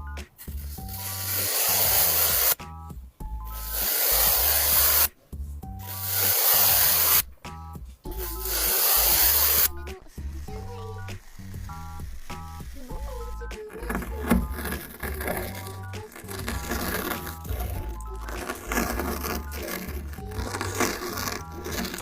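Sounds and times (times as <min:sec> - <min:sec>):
background music with steady bass: 0:00.0 - 0:22.0
loud hissing: 0:00.5 - 0:02.6, 0:03.4 - 0:05.1, 0:05.8 - 0:07.3, 0:08.2 - 0:13.3.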